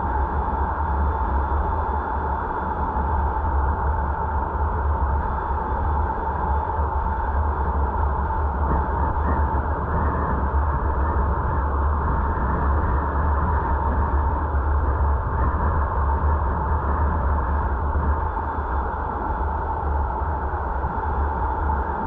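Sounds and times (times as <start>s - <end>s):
car road and wind noise: 6.4s - 22.0s
deep rumble: 7.0s - 22.0s.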